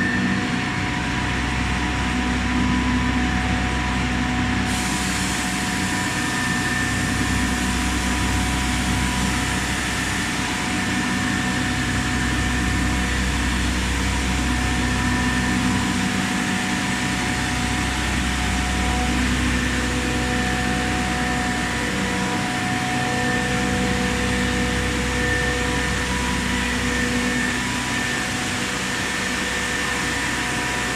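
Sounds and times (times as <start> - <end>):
mechanical rush of fans: 0.0 - 30.9
steady whining tones: 0.0 - 30.9
low hum: 6.4 - 30.8.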